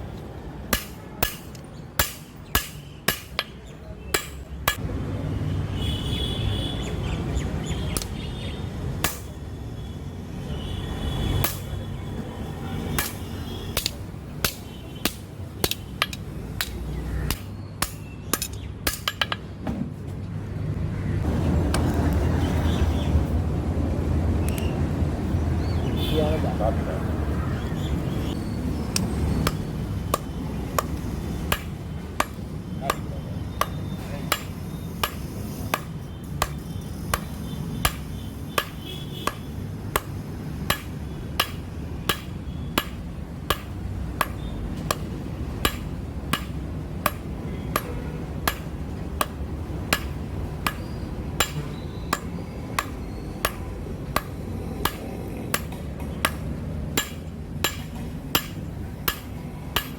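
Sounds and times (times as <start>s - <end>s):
hammer striking steel on anvil: 0.7s - 4.8s, 9.0s - 9.3s, 11.4s - 11.7s, 13.0s - 13.2s, 13.8s - 19.4s, 29.4s - 59.9s.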